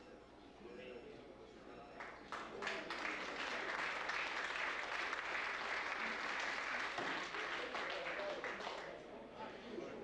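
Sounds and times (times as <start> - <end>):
audience applauding: 2.7 - 8.9.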